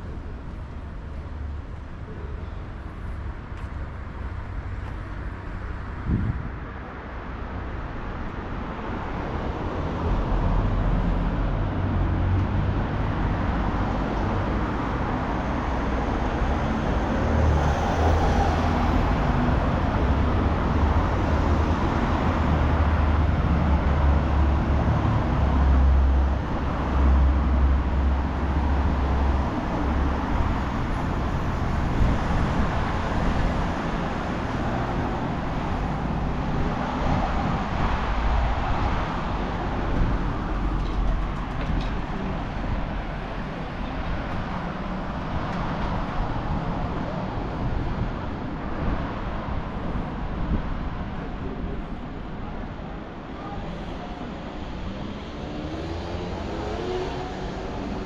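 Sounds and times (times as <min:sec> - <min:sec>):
rumble of motor vehicles: 0:00.0 - 0:58.0.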